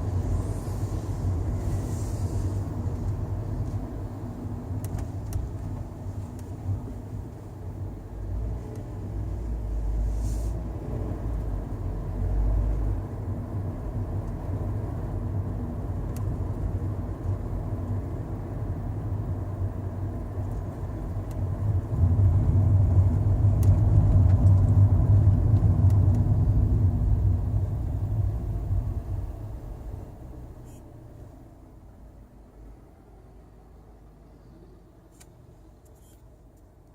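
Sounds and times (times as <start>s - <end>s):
car cabin rumble: 11.2s - 31.4s.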